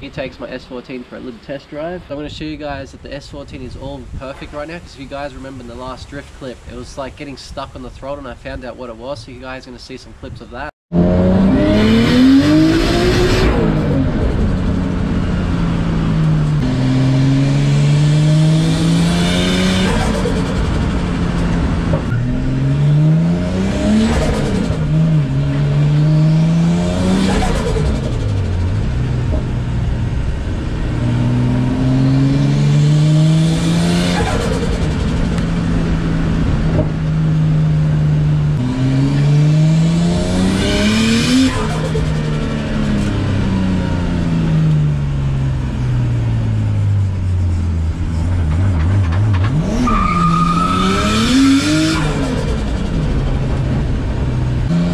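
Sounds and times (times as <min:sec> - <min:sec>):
car engine revving: 0:10.9 - 0:54.9.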